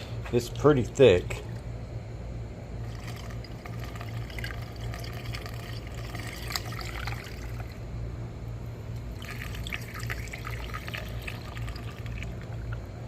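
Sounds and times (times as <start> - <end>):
steady low hum: 0.0 - 13.0
water trickling and splashing: 2.8 - 7.8, 9.2 - 12.9.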